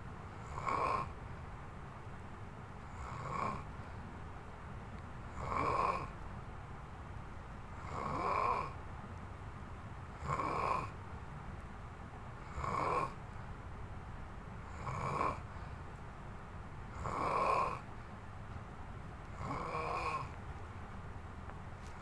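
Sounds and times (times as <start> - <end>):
snoring: 0.4 - 1.2, 2.9 - 3.7, 5.3 - 6.1, 7.8 - 8.8, 10.2 - 11.0, 12.4 - 13.2, 14.7 - 15.5, 16.9 - 17.9, 19.4 - 20.4.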